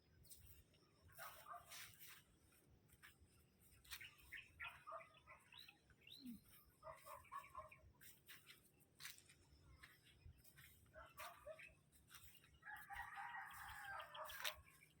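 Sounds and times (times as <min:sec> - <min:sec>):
faint chicken clucking: 0:00.1 - 0:15.0.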